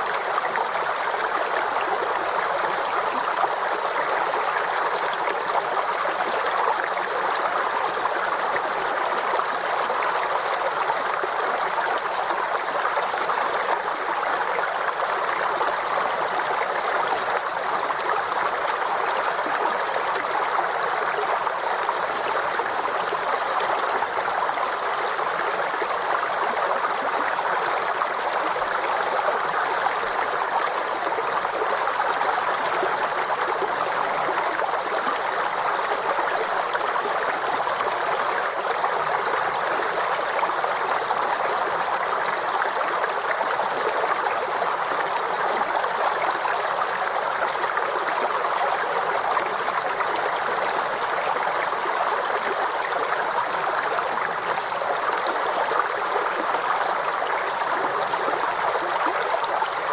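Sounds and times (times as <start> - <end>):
stream flowing: 0.0 - 59.9.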